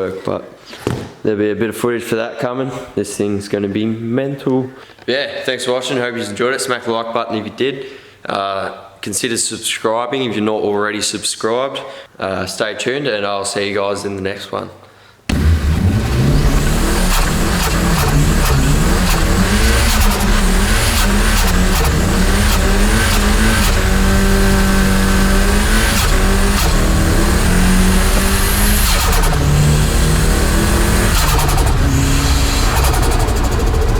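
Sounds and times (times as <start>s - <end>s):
car engine revving: 15.3s - 33.9s
exhaust crackles: 15.3s - 33.9s.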